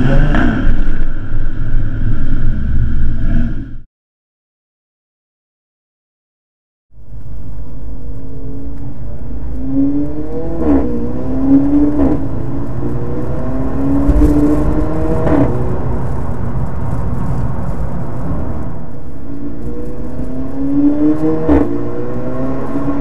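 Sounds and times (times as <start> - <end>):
car engine accelerating: 7.5 - 23.0
exhaust crack on upshift: 14.0 - 19.0.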